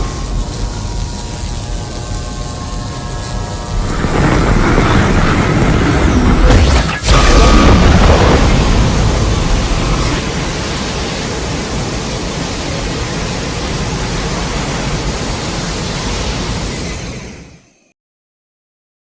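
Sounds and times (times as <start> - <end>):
explosion rumbling roar: 3.0 - 13.3.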